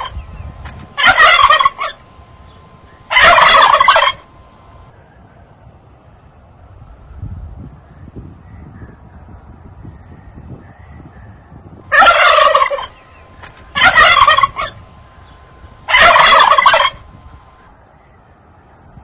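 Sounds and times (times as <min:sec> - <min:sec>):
turkey gobbling: 0:00.0 - 0:04.9, 0:11.8 - 0:17.7.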